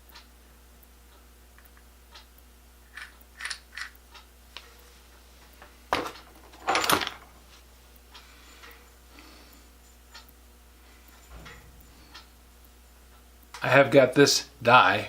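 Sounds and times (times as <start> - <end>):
metal parts clanking together: 6.0 - 7.2.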